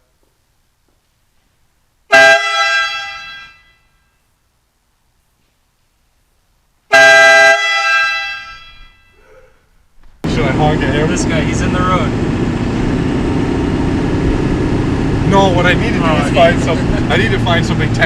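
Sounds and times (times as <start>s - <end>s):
loud air horn blasts: 2.1s - 4.0s, 6.9s - 9.2s.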